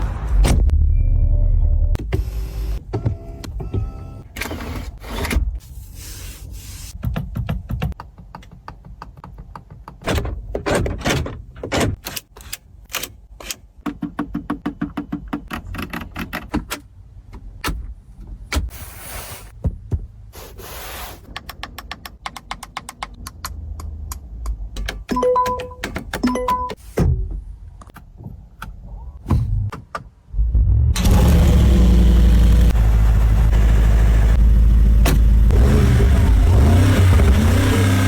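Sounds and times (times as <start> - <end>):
car door and latch clicks and thunks: 7.0 - 18.7, 21.3 - 30.2.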